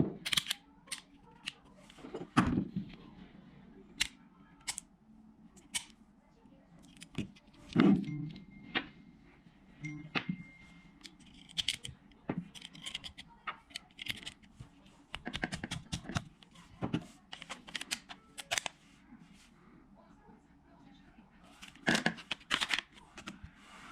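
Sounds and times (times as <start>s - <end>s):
pistol mechanical clicks: 0.2s - 1.0s.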